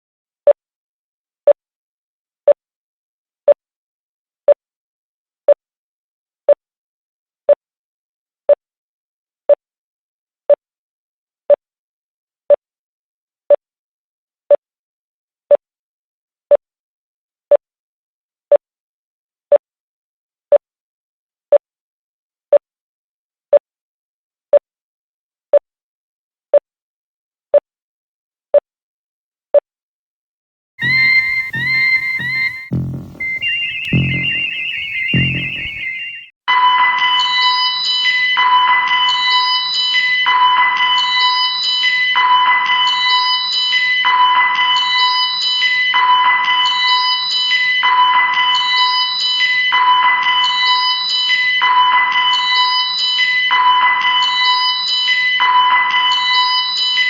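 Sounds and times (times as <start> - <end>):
short electronic beep: 30.8 - 36.2.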